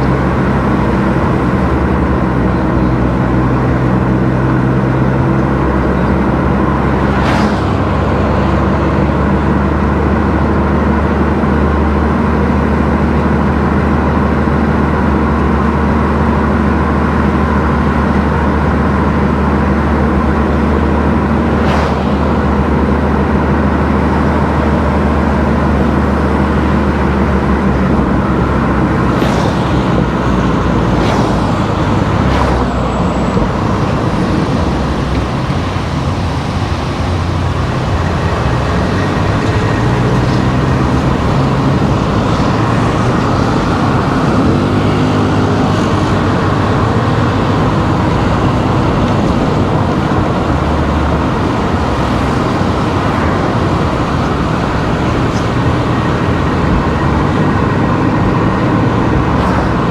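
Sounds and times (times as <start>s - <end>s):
car engine and tyre road noise: 0.0s - 59.9s
rising engine note: 19.7s - 59.9s.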